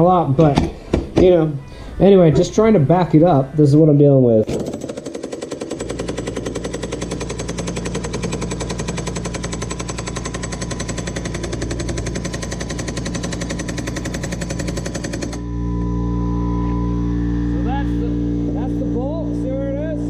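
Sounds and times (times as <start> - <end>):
air impact gun hammering: 4.5 - 15.4.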